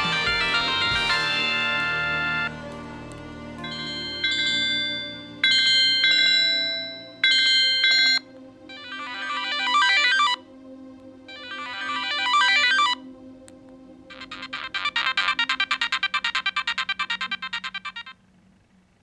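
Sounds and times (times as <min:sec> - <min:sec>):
phone chiming tone: 0:00.0 - 0:02.6
fast pulsing ringtone: 0:00.0 - 0:02.7
phone ringtone melody: 0:00.0 - 0:02.7, 0:03.6 - 0:08.2.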